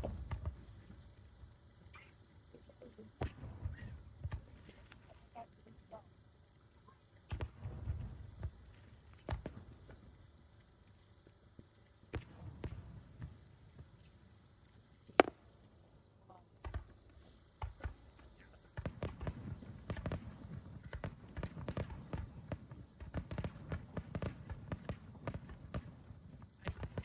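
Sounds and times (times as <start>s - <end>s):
fireworks bangs and crackles: 18.8s - 27.0s.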